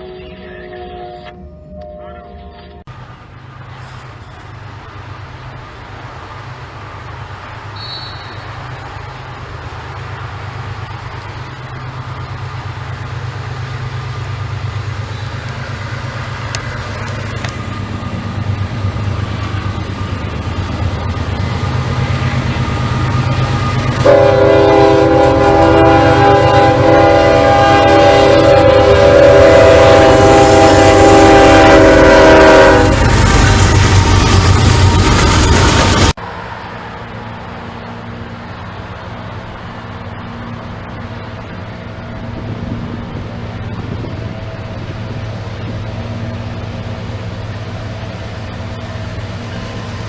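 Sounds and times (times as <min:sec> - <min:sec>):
locomotive low rumble: 0:00.0 - 0:50.0
multi-chime train air horn: 0:24.0 - 0:33.0.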